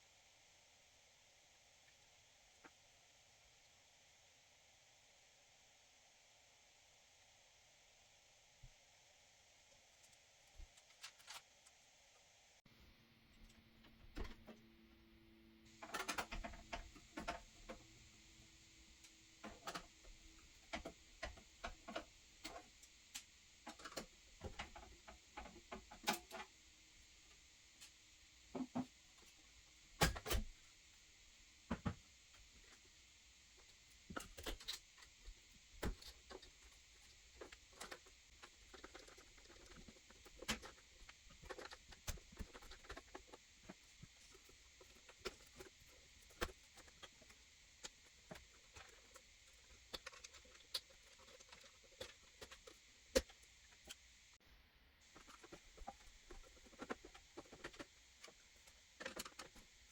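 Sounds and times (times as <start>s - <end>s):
faint steady hiss: 0.0s - 59.9s
hands handling computer parts: 35.8s - 54.0s, 55.1s - 59.8s.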